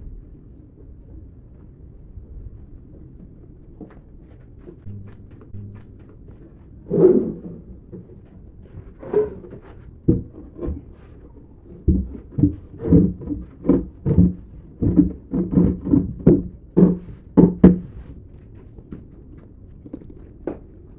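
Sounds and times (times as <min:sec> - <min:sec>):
dull knocks on wood: 0:11.9 - 0:18.0.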